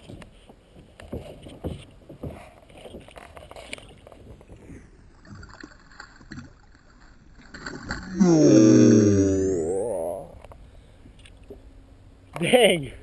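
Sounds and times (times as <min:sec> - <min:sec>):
low rumble of water and wind: 0:00.0 - 0:13.0
small water splashes: 0:03.6 - 0:08.2.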